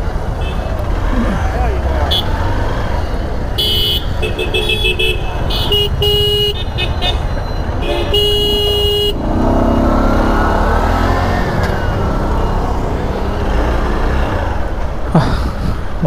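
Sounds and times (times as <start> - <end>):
vehicle horn: 3.6 - 9.7
engine note rising and falling: 9.1 - 15.0.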